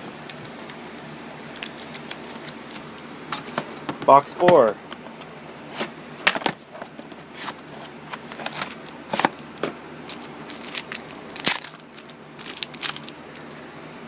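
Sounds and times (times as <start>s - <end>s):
card wrapper crinkling and tearing: 0.1s - 0.8s, 1.4s - 3.0s, 7.4s - 13.6s.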